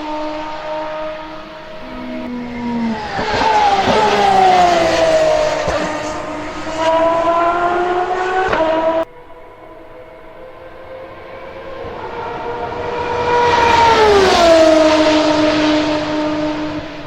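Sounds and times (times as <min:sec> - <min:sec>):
engine revving at high revs: 0:00.0 - 0:09.1.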